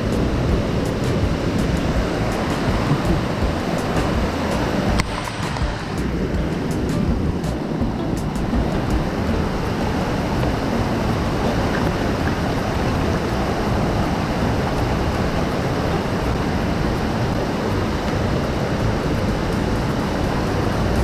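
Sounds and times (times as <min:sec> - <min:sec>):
rushing water: 0:00.0 - 0:21.0.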